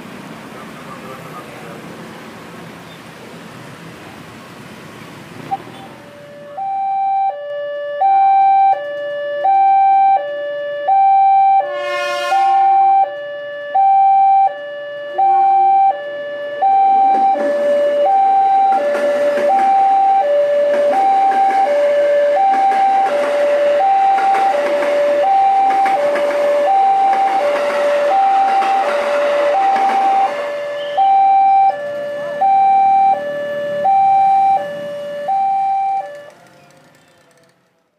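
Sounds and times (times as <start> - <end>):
train passing at speed: 0.0 - 6.4, 11.7 - 12.7, 17.0 - 35.0, 36.1 - 37.9
level crossing two-tone alarm: 5.5 - 36.8
train horn: 11.6 - 13.0, 24.4 - 31.2, 36.3 - 37.9.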